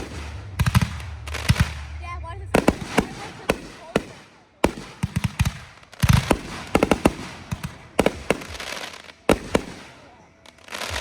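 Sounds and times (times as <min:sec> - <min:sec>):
deep firework boom: 0:00.0 - 0:08.6
fireworks bangs and pops: 0:00.0 - 0:11.0.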